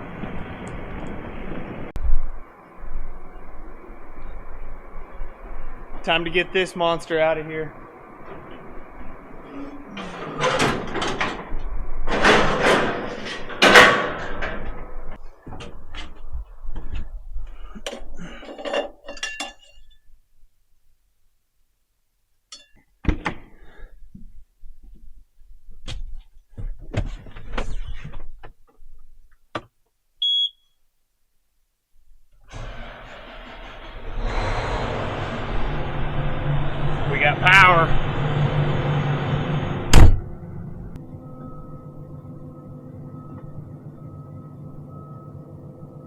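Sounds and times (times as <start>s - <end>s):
door sliding and rattling: 8.2s - 16.2s, 32.4s - 37.1s
machine running: 32.5s - 46.0s.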